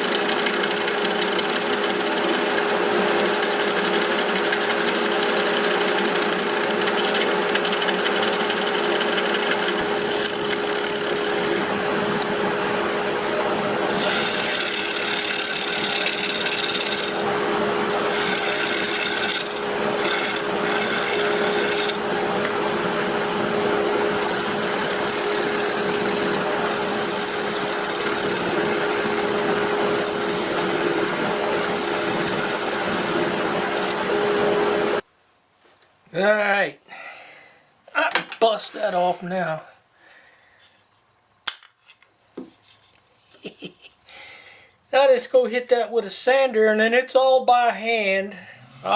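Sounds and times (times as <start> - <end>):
turning tool scraping wood: 0.0 - 12.4, 13.3 - 34.1
wood lathe motor hum: 0.0 - 35.0.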